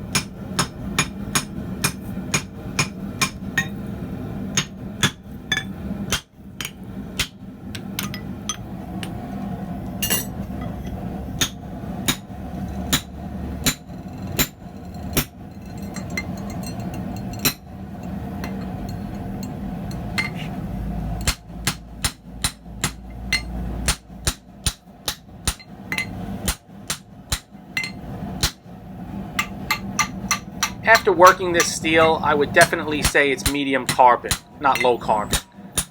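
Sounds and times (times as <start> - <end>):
hammer striking steel on anvil: 0.0 - 3.8, 4.5 - 9.2, 11.4 - 12.3, 21.2 - 28.6, 29.4 - 35.9.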